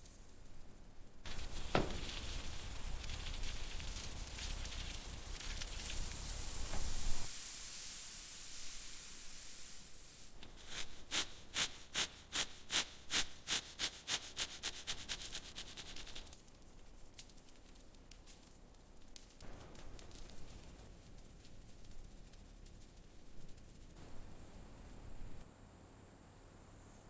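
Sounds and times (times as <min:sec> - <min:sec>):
steady hiss: 0:00.0 - 0:27.0
scrubbing strokes on car panel: 0:10.4 - 0:16.3.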